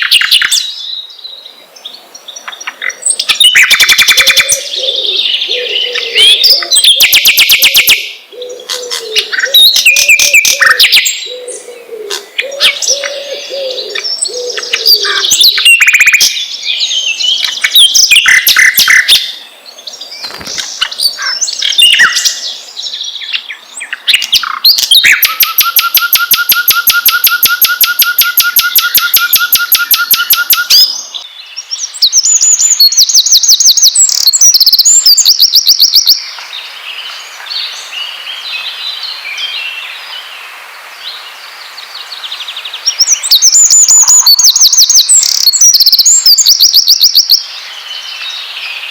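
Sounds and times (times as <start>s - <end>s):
songbirds chirping and singing: 0.0s - 48.9s
low repeating bird call: 1.8s - 31.3s, 42.7s - 48.9s
long fast bird trill: 2.9s - 8.1s, 8.7s - 11.5s, 24.0s - 31.0s, 32.0s - 36.2s, 42.9s - 47.5s.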